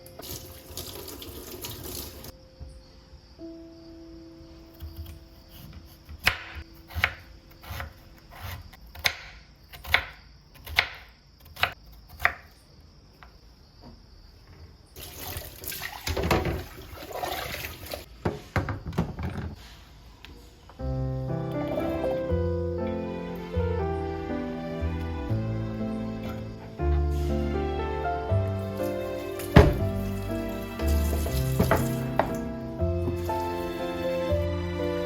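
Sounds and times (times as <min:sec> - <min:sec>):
tap water running into sink: 0:00.0 - 0:02.3, 0:15.0 - 0:18.1, 0:28.6 - 0:34.1
sharp knocks: 0:29.6 - 0:30.0, 0:31.3 - 0:32.4.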